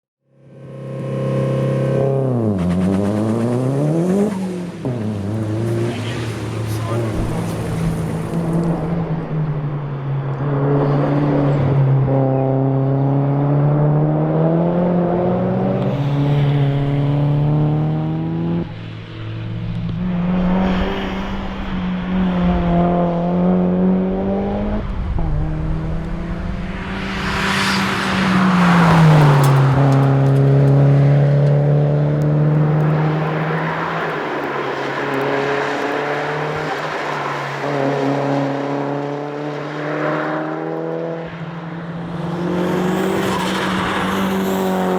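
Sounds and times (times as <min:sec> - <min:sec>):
car engine revving at full throttle: 0:00.3 - 0:44.9
turbo rushing noise: 0:20.4 - 0:30.5.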